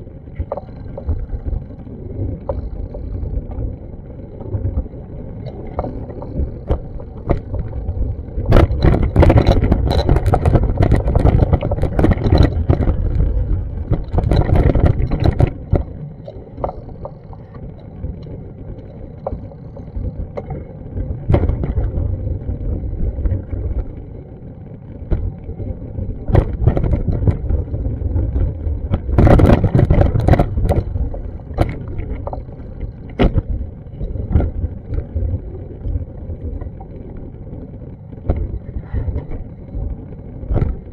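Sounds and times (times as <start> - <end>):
wind buffeting microphone: 0.0 - 16.8, 25.1 - 37.5.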